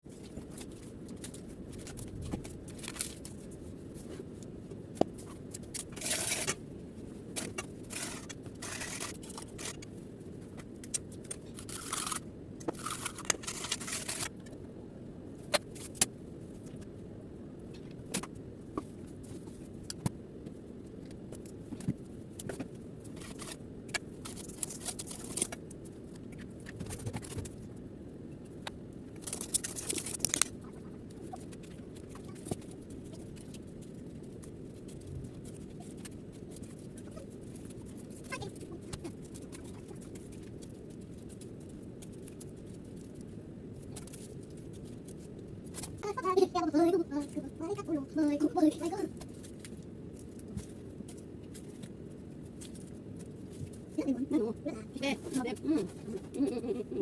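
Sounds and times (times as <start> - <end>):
steady low hum: 0.0 - 57.0
scraping and rustling: 0.1 - 14.5.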